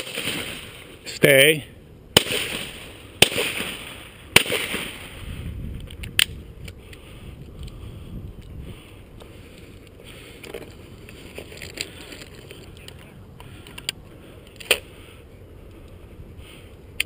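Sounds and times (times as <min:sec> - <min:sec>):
shotgun shots: 0:00.0 - 0:00.8, 0:02.1 - 0:05.2.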